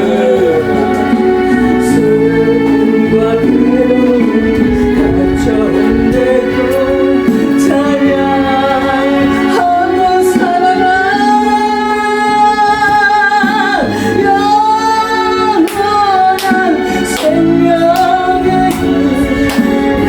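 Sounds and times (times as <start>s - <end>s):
instrumental accompaniment: 0.0s - 20.0s
person singing gospel: 0.0s - 20.0s.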